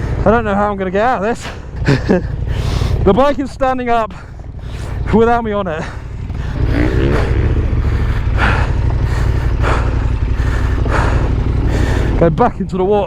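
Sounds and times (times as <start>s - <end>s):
motorcycle engine running: 0.0s - 13.0s
person breathing hard: 2.4s - 3.0s, 4.1s - 5.1s, 5.8s - 12.2s.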